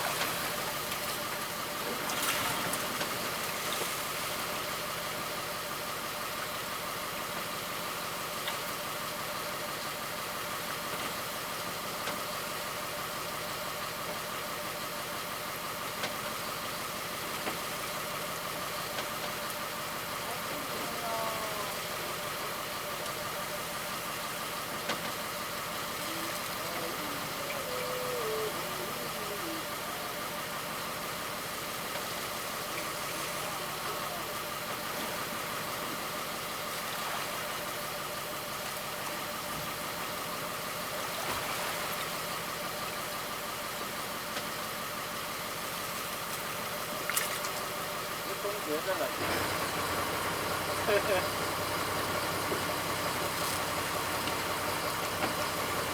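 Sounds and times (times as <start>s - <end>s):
boat engine droning: 0.0s - 10.6s, 12.2s - 55.9s.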